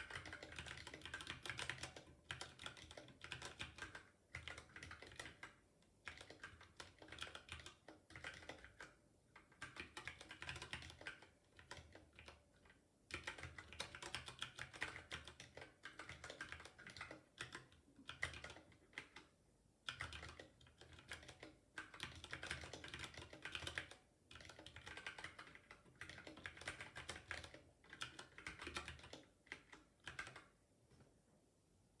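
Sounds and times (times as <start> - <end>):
mechanical keyboard typing: 0.0 - 30.5.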